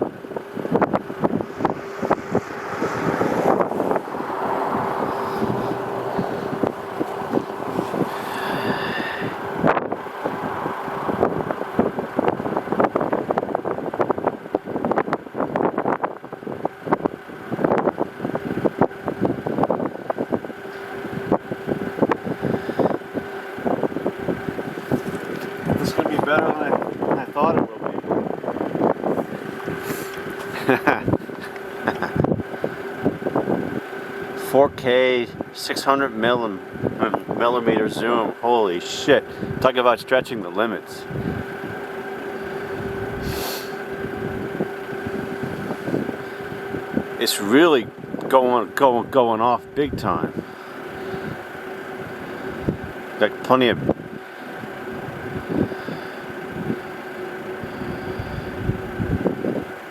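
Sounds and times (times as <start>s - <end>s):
wind buffeting microphone: 0.0s - 35.5s, 41.0s - 47.2s, 53.8s - 59.9s
steady low hum: 0.0s - 59.9s
brief hiss: 43.2s - 43.8s.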